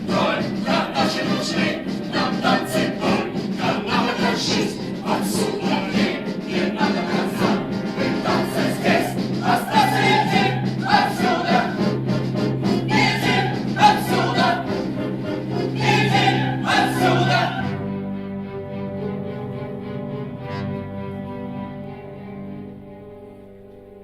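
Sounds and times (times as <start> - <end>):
choir singing held notes: 0.0 - 18.2.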